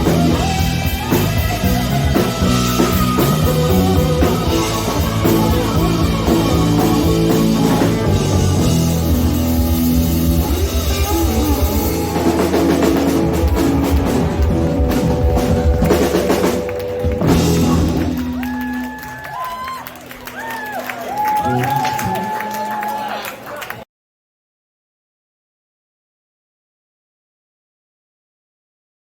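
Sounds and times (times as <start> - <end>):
live rock band playing: 0.0 - 22.7.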